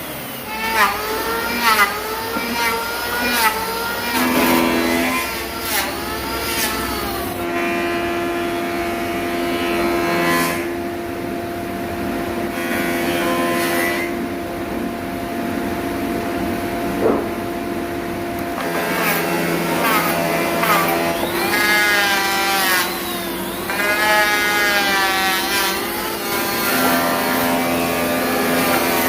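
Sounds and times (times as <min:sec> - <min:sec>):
power tool motor running: 0:00.0 - 0:07.5, 0:18.4 - 0:29.0.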